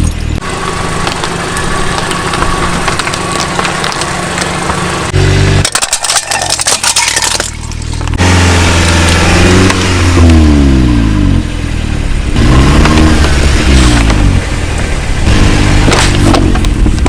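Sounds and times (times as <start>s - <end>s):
car engine running loudly: 0.0s - 17.0s
objects crushed under car tyre: 0.9s - 9.8s.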